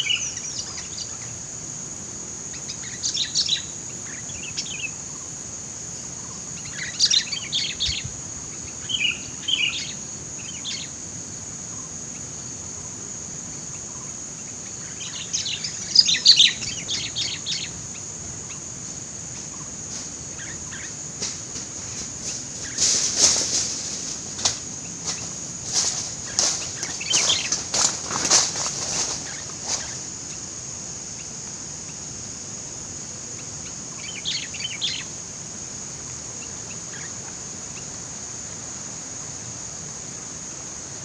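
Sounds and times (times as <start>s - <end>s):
high insect drone: 0.0s - 41.0s
birds chattering calls: 6.0s - 11.0s, 11.6s - 32.1s, 33.2s - 35.2s, 36.2s - 38.0s.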